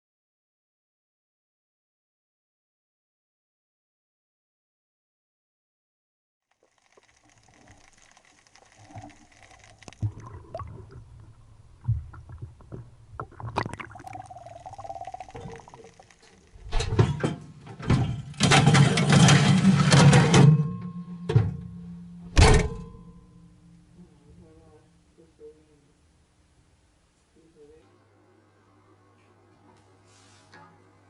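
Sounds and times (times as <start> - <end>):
water sounds: 6.5 - 16.7
knocks and thunks: 22.3 - 23.0.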